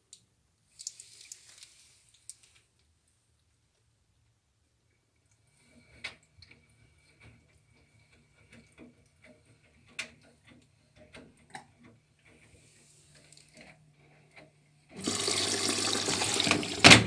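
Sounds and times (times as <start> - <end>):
washing machine low hum: 14.9 - 17.0
washing machine drum clicks and knocks: 15.0 - 17.0.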